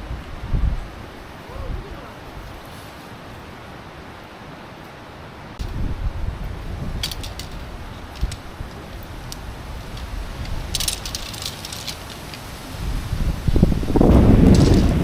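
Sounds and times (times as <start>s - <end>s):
wind gusting over microphone: 0.0s - 3.6s, 5.5s - 15.0s
light rattles and clicks: 6.8s - 12.6s, 13.5s - 15.0s.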